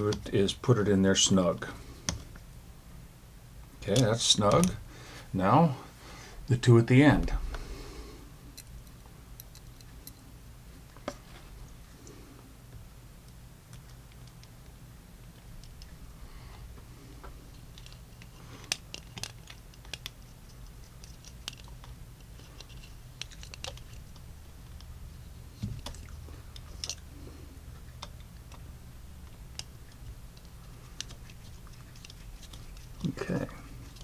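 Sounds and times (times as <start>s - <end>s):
steady low hum: 0.0s - 34.0s
screwdriver and metal parts clicking: 21.0s - 24.9s, 26.6s - 27.0s.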